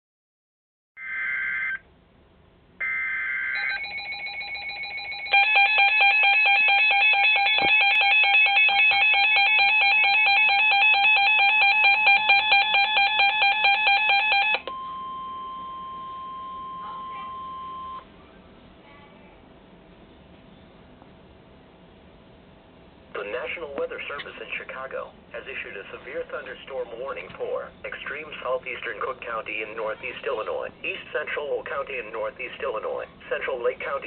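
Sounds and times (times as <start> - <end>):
warbling electronic alarm: 1.0 - 1.9, 2.8 - 18.0
steady warning tone: 2.8 - 18.1.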